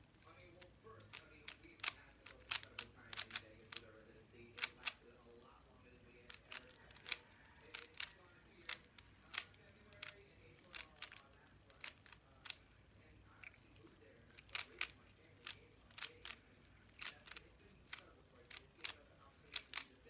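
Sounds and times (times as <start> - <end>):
puzzle cube plastic clicks: 1.0 - 3.9, 4.5 - 5.0, 6.2 - 12.6, 14.2 - 20.0.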